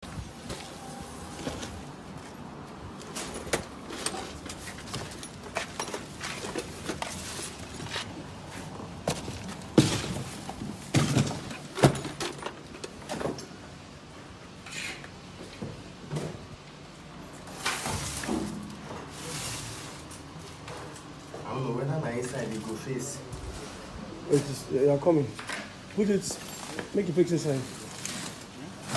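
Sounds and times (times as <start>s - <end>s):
objects knocking and clattering: 9.1s - 13.4s.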